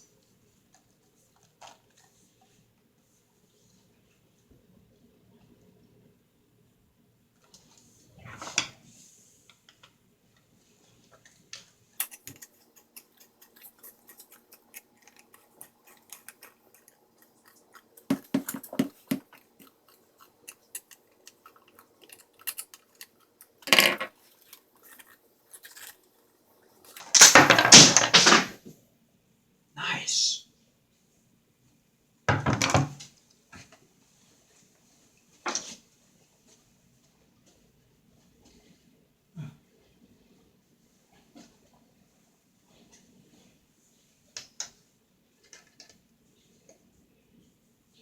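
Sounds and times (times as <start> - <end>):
metal parts clicking: 12.0 - 26.0.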